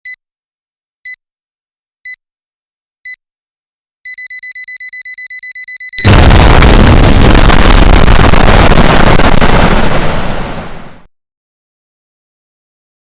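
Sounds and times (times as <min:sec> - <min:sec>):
electronic alarm beeping: 0:04.1 - 0:06.0.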